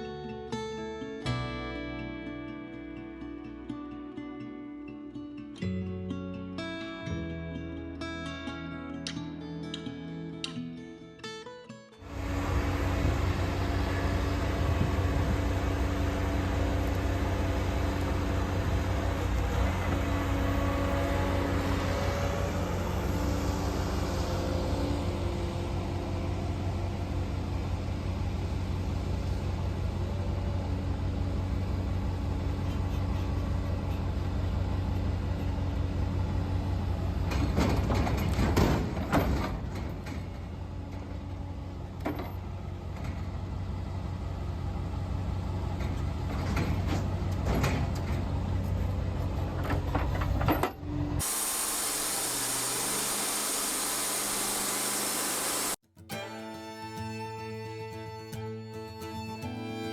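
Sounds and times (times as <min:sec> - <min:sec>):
music: 0:00.0 - 0:12.1, 0:55.9 - 0:59.9
engine running: 0:12.0 - 0:55.8
hissing clattering bursts: 0:51.2 - 0:55.8.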